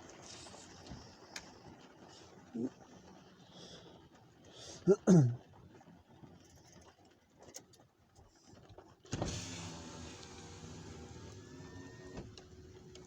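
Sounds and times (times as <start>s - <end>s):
small electric motor whining: 9.3s - 13.0s.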